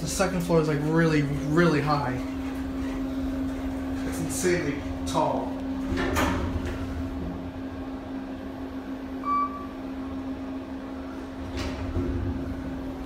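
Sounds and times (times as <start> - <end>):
elevator drone and rumble: 0.0 - 13.0
short beep: 9.2 - 9.8.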